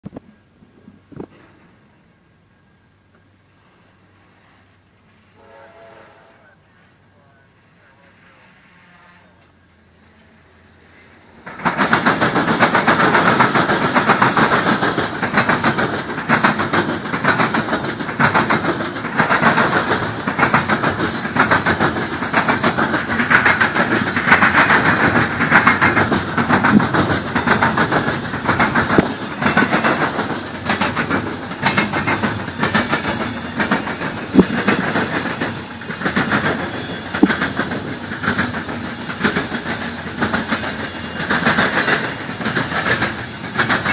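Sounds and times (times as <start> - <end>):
freight train wheels clacking: 9.4 - 43.9.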